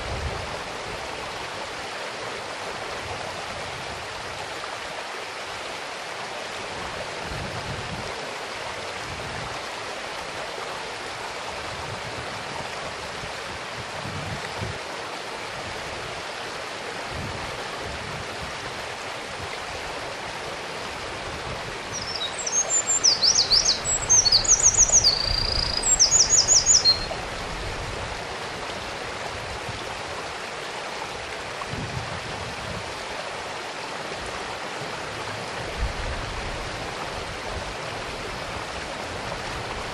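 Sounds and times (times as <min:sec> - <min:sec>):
mountain stream running: 0:00.0 - 0:39.9
wren singing trills: 0:21.9 - 0:27.2.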